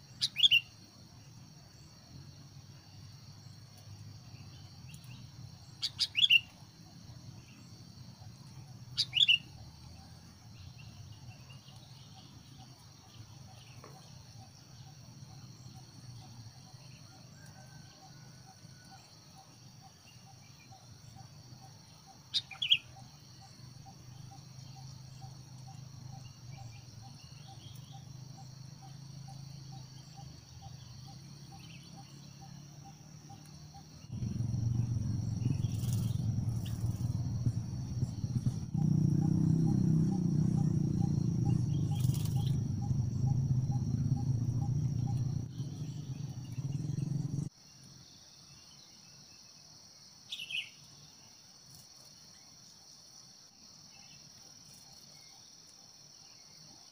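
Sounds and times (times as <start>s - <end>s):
high-pitched insect drone: 34.1s - 47.5s.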